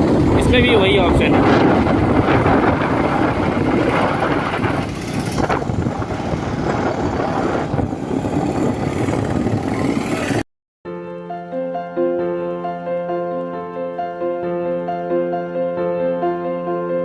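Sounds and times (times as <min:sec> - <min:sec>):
motorcycle engine: 0:00.0 - 0:10.5
road and wind noise: 0:00.0 - 0:10.5.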